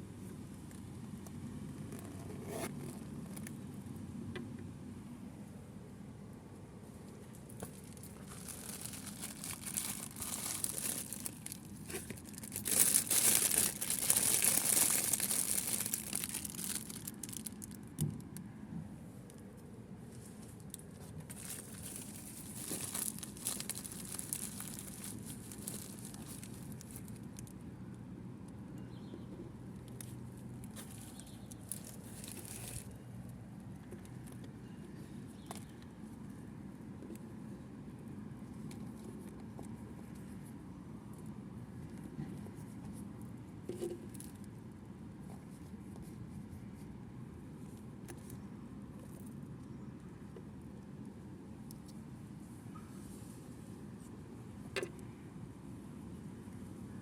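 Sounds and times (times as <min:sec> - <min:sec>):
plastic packaging crinkling: 0:07.6 - 0:18.3, 0:21.3 - 0:27.5, 0:30.6 - 0:33.0.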